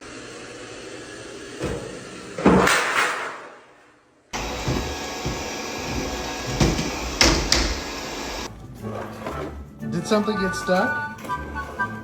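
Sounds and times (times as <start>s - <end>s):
robot vacuum bumping: 4.4s - 8.5s
robot vacuum whirring: 4.4s - 8.5s.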